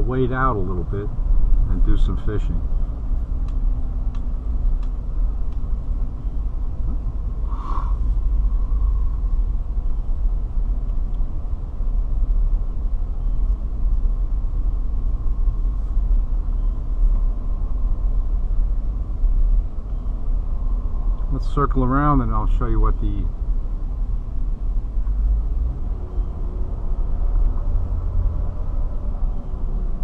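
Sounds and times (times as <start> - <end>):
car driving rumble inside cabin: 0.0 - 30.0.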